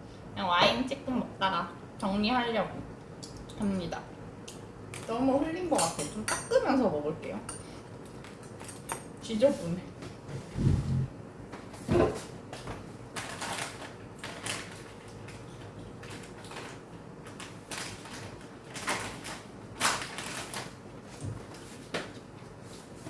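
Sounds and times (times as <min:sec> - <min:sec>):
faint steady hum: 0:00.0 - 0:11.8
utensils and packaging clicking: 0:13.2 - 0:20.7.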